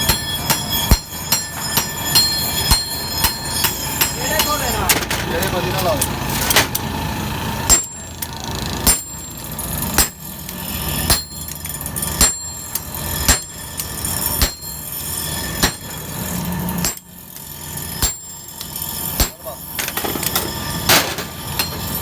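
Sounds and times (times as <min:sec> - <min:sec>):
hammer striking metal on anvil: 0:00.0 - 0:06.8, 0:07.6 - 0:22.0
steady background noise: 0:00.0 - 0:22.0.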